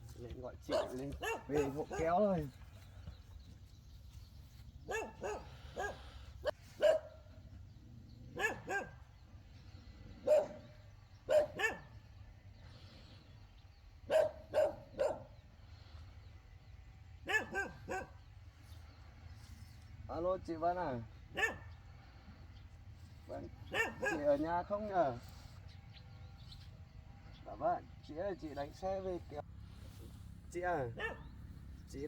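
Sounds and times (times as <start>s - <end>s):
dog barking: 0.7s - 2.4s, 4.8s - 7.3s, 8.3s - 9.1s, 10.2s - 12.0s, 14.0s - 15.4s, 17.2s - 18.3s, 21.3s - 21.8s, 23.4s - 24.4s, 30.9s - 31.3s.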